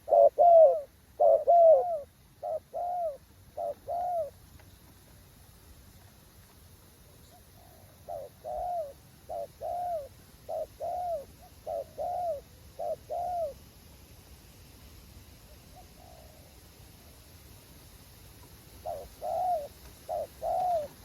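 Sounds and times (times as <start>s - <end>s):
dove cooing: 0.0s - 4.4s, 7.4s - 13.6s, 15.7s - 16.5s, 18.8s - 21.0s.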